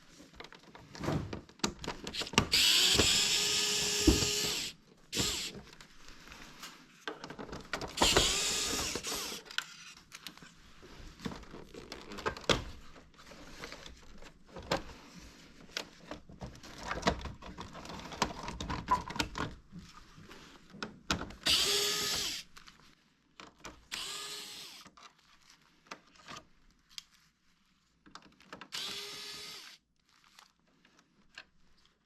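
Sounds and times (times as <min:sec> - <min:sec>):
cordless screwdriver whine: 0:02.5 - 0:05.6, 0:08.0 - 0:09.4, 0:21.5 - 0:22.5, 0:23.9 - 0:24.8, 0:28.8 - 0:29.8.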